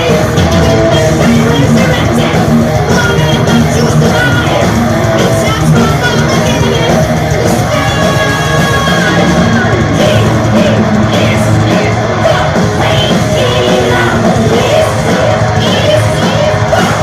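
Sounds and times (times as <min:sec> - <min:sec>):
distorted electric guitars: 0:00.0 - 0:17.0
drums: 0:00.0 - 0:17.0
high yelled vocals: 0:00.0 - 0:17.0.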